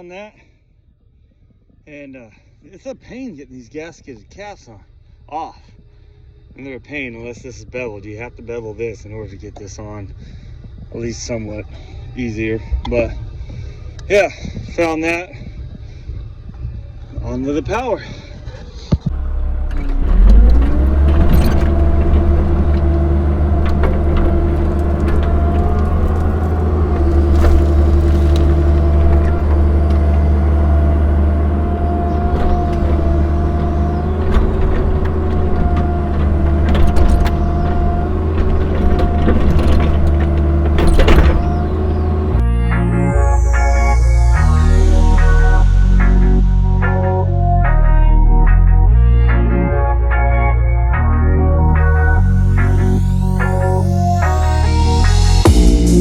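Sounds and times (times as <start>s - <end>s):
excavator diesel engine revving: 19.1s - 42.4s, 52.2s - 56.0s
hydraulic whine: 19.1s - 45.6s, 52.2s - 56.0s
bucket knocking and scraping gravel: 20.2s - 42.2s
electronic music with synthesizer chords: 42.4s - 56.0s.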